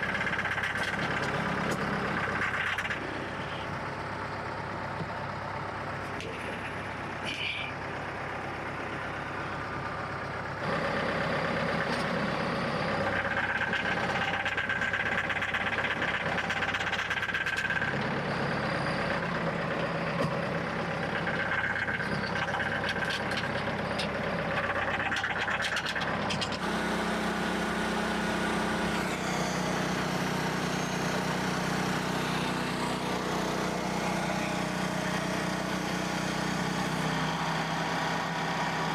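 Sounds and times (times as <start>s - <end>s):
small gasoline engine running: 0.0s - 38.9s.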